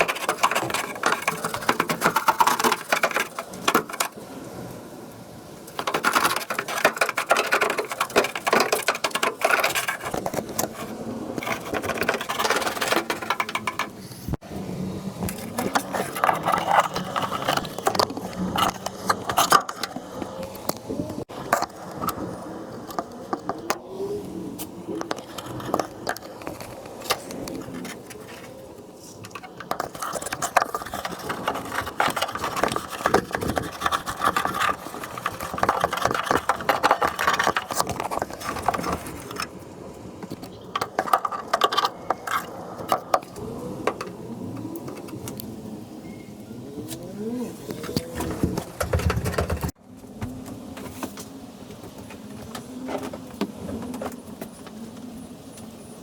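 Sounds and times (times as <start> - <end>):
small knocks: 0.0 - 4.2, 5.7 - 14.4, 47.8 - 51.2
scraping clicking and rattling: 0.0 - 4.3, 5.7 - 14.4, 15.2 - 45.6, 47.6 - 49.8.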